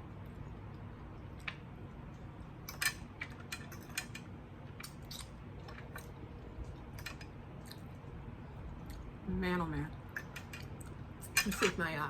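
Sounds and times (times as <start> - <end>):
person chewing food: 4.7 - 9.1.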